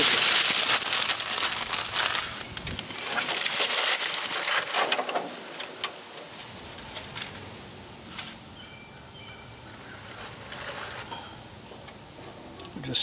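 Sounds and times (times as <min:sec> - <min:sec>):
newspaper crumpling: 0:00.0 - 0:07.5, 0:09.6 - 0:11.1.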